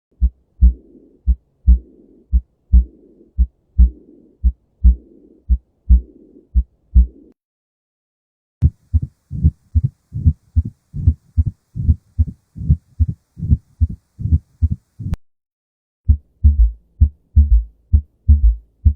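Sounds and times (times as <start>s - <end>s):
heartbeat: 0.1s - 7.3s, 8.6s - 15.2s, 16.1s - 18.9s
rushing heart murmur: 0.2s - 7.3s, 8.6s - 15.2s, 16.1s - 18.9s.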